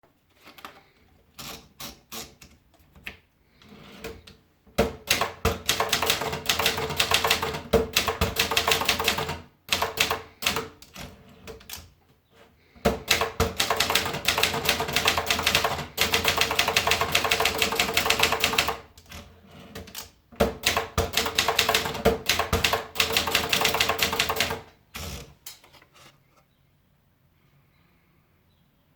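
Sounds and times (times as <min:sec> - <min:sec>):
typewriter keystrokes clattering: 0:04.8 - 0:11.9, 0:12.9 - 0:19.2, 0:19.8 - 0:25.3.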